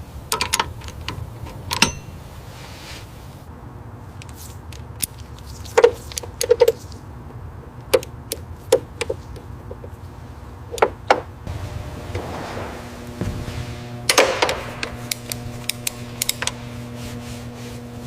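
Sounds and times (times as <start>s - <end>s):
steady low hum: 11.4s - 18.0s.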